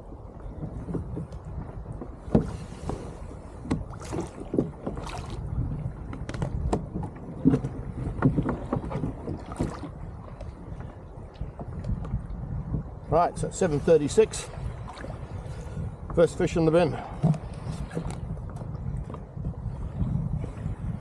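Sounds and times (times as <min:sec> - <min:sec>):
wind rumble on microphone: 0:00.0 - 0:21.0
gear knocking on kayak: 0:00.5 - 0:03.0, 0:03.6 - 0:05.4, 0:06.0 - 0:12.2.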